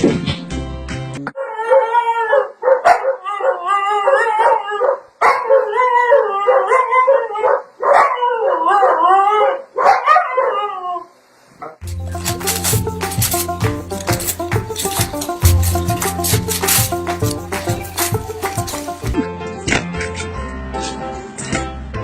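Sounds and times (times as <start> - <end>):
music: 0.0 - 1.2, 11.8 - 22.0
dog howling: 1.4 - 11.1.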